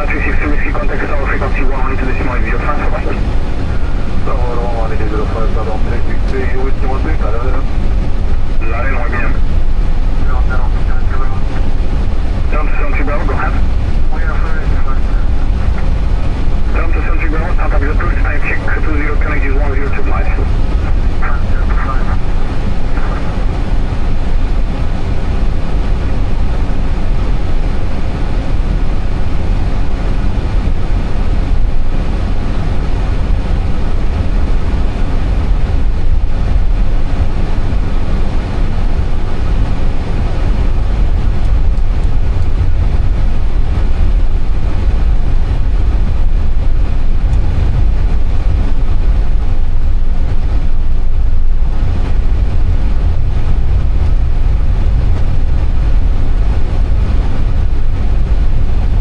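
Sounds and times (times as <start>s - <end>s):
aircraft cockpit engine hum: 0.0s - 59.0s.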